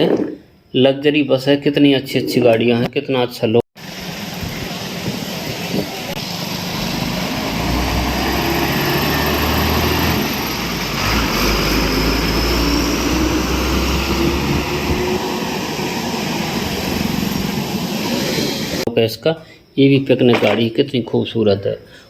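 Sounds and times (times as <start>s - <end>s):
vehicle engine rumbling: 3.8s - 18.9s.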